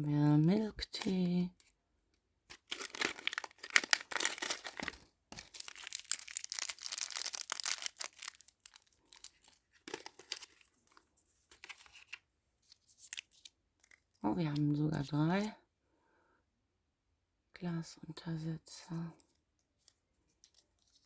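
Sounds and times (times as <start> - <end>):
packaging torn and crinkled: 2.5 - 11.0, 13.0 - 14.0.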